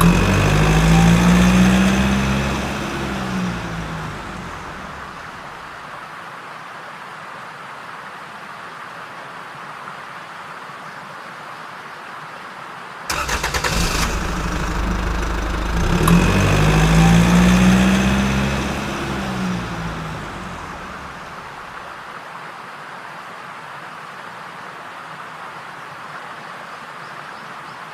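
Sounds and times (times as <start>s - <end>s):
engine starting and running: 0.0s - 5.8s, 13.1s - 21.9s.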